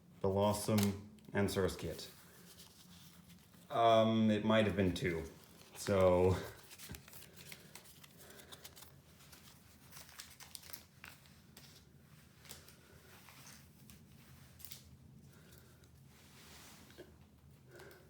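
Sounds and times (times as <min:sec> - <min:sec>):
foil wrapper crinkling and tearing: 0:05.2 - 0:15.0.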